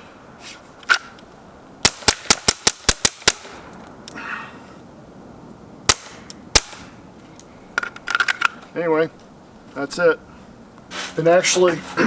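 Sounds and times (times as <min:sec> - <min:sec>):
suppressed pistol shots: 0:05.9 - 0:06.9.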